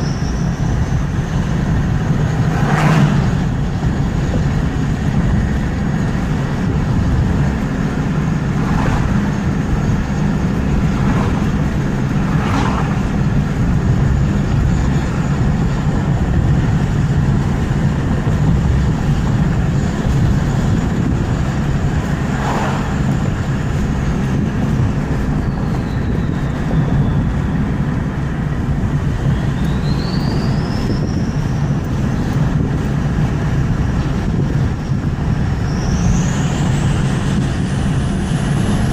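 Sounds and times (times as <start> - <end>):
turbocharger whistling: 0.0 - 4.1, 24.3 - 27.9, 28.9 - 32.7, 34.3 - 38.9
engine running: 0.0 - 38.9.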